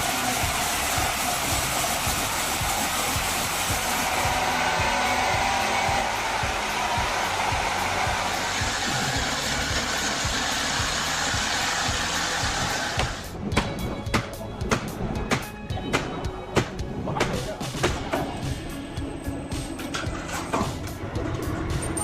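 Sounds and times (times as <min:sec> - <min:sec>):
chainsaw cutting tree trunk: 0:00.0 - 0:13.3.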